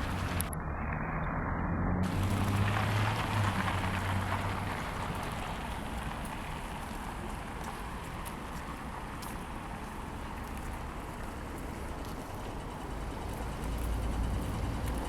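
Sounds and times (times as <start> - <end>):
low vehicle hum: 0.0 - 15.0
wind through leaves: 0.0 - 15.0.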